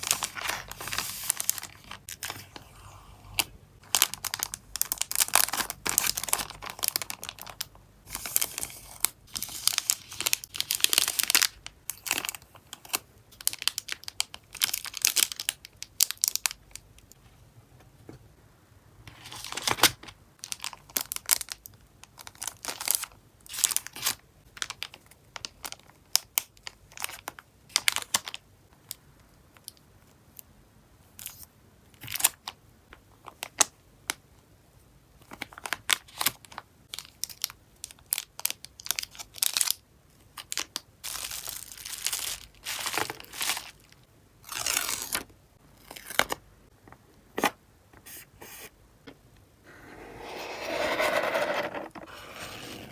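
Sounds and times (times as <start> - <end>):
plastic packaging crinkling: 0.0 - 2.4, 3.8 - 12.4, 40.5 - 45.2.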